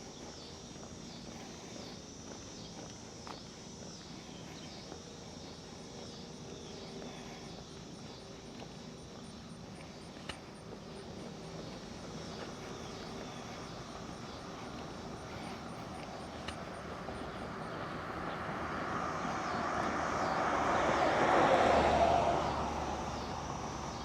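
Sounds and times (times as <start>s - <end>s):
faint insect chirps: 0.0s - 24.0s
vehicle passing by: 12.4s - 24.0s.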